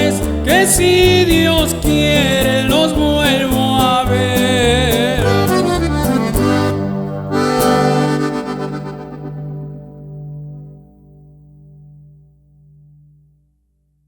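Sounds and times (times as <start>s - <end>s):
button accordion melody: 0.0s - 10.8s
pulsing bass line: 0.0s - 12.6s.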